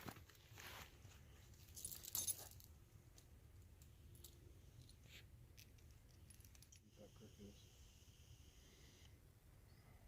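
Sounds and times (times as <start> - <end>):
metallic clicking and jingling: 1.6 - 2.7.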